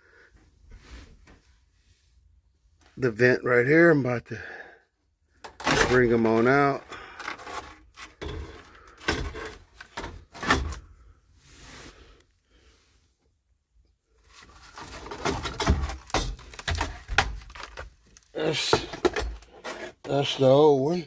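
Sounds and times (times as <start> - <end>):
plastic clatter: 14.4 - 20.1.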